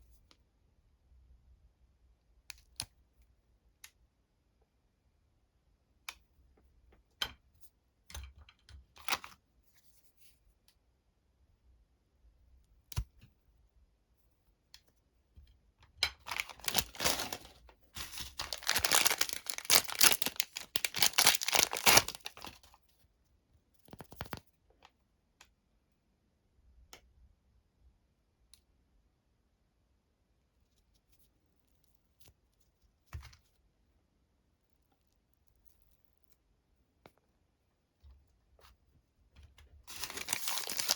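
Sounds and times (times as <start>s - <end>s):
plastic wrapper tearing and crinkling: 9.0s - 9.3s, 16.2s - 22.8s, 23.9s - 24.4s, 39.9s - 40.9s.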